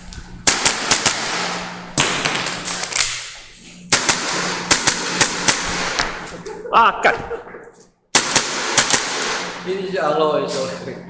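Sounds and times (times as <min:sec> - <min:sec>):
airsoft pistol shots: 0:00.4 - 0:06.3, 0:08.1 - 0:09.7.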